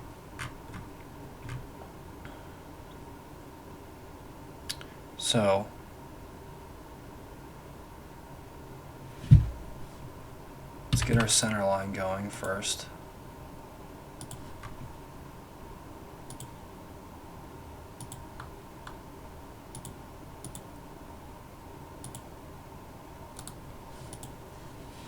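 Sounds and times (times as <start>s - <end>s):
computer mouse clicking: 0.4s - 1.6s, 14.2s - 14.8s, 16.3s - 16.5s, 18.0s - 19.0s, 19.7s - 20.7s, 22.0s - 22.2s, 23.4s - 24.4s.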